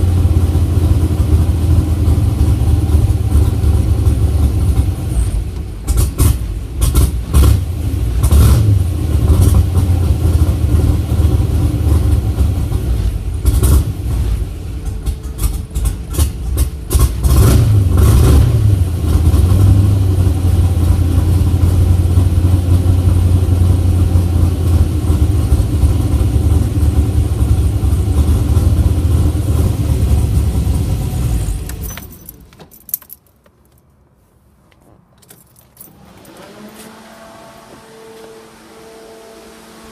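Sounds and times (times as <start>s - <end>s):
keys jingling: 31.6s - 34.0s, 34.7s - 37.0s.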